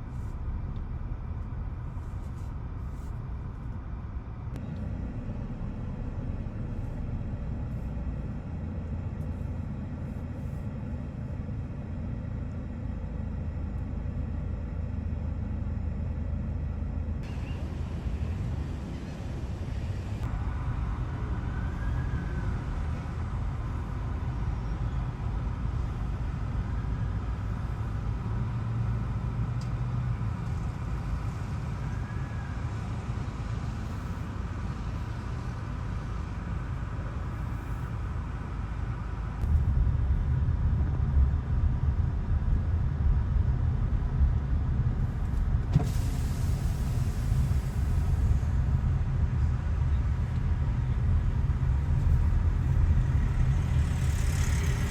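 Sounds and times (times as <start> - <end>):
vehicle engines rumbling: 0.0 - 54.9
hiss: 45.8 - 48.4.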